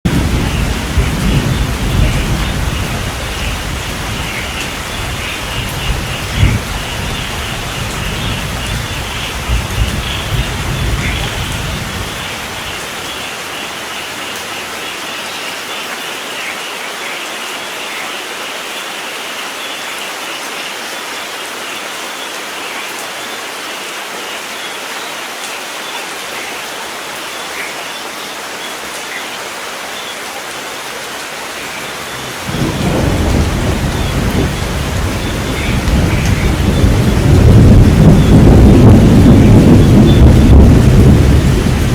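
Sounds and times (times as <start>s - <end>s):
steady rain falling: 0.0s - 41.9s
low rumble of thunder: 0.1s - 13.0s, 31.7s - 41.9s.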